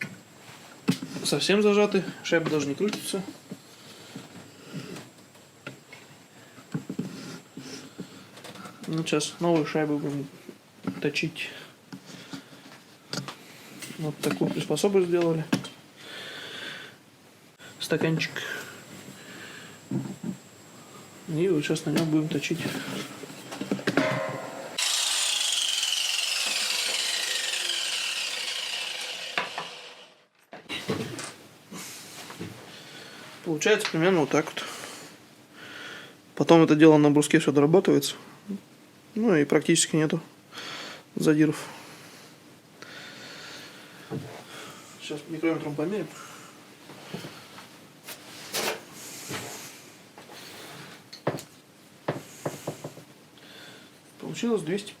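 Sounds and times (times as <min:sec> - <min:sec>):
angle grinder grinding metal: 0:22.9 - 0:30.3
metal scrape: 0:24.0 - 0:29.9.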